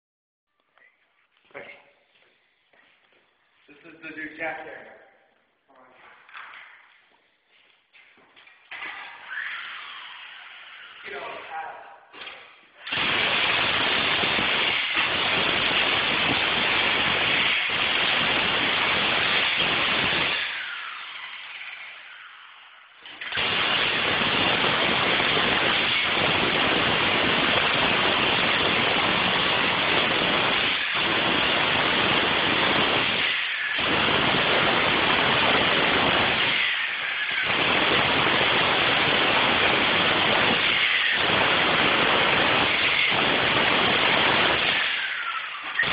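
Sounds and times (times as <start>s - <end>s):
jackhammer rattling: 12.2s - 22.1s, 22.9s - 45.9s.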